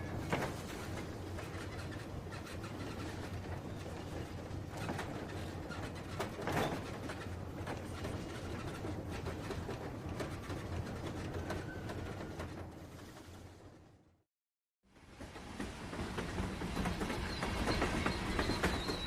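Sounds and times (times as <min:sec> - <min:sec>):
train clatter: 0:00.0 - 0:13.9, 0:15.0 - 0:19.0
train running: 0:00.0 - 0:14.0, 0:14.9 - 0:19.0.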